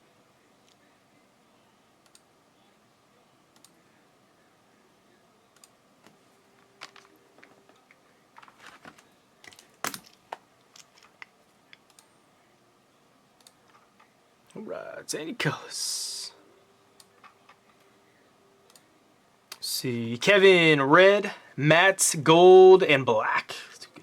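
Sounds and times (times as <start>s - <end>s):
faint clicks and taps: 5.6s - 12.1s.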